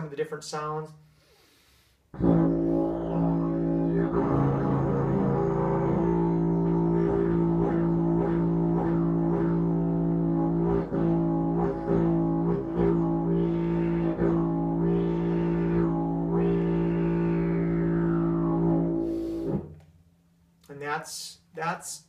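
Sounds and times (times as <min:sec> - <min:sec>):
didgeridoo drone: 0:02.2 - 0:19.8.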